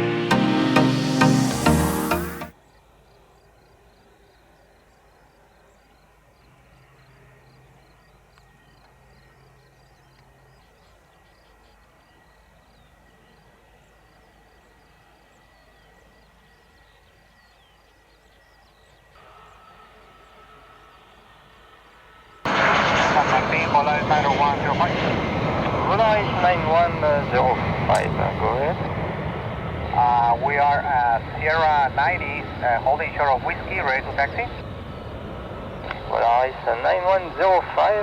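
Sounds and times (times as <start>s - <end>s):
intro music: 0.0s - 2.5s
aircraft engine noise: 19.2s - 38.0s.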